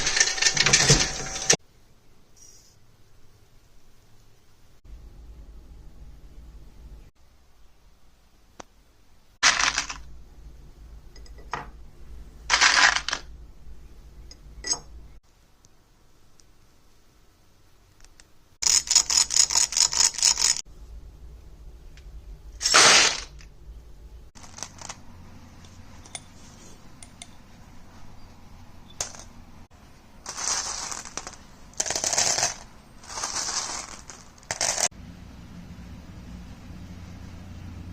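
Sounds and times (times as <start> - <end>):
reloading press metallic rattling: 0.0 - 1.6, 30.3 - 34.9
low hum: 4.9 - 8.0, 20.7 - 22.6, 34.9 - 37.9.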